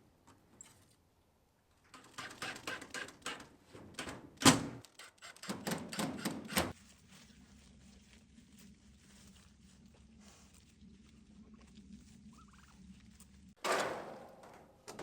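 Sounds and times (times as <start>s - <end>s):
wooden panels clicking and knocking: 1.9s - 6.7s, 13.6s - 15.0s.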